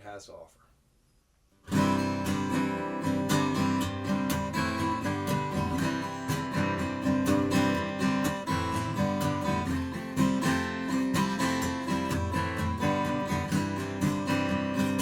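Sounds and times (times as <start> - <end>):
acoustic guitar playing: 1.6 - 15.0.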